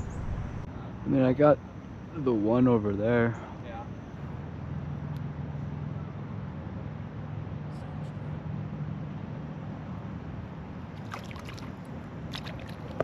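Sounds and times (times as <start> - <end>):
low motor hum: 0.0 - 0.8.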